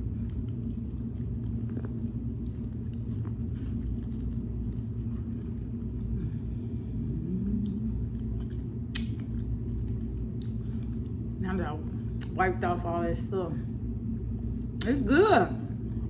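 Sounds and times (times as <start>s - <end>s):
chewing corn on the cob: 0.0s - 11.2s
steady low rumble: 0.0s - 16.0s.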